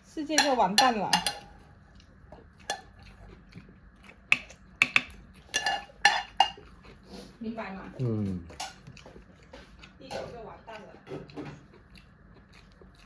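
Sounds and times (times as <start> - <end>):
utensils clinking against dishes: 0.2 - 1.6, 4.4 - 6.7, 8.5 - 9.0.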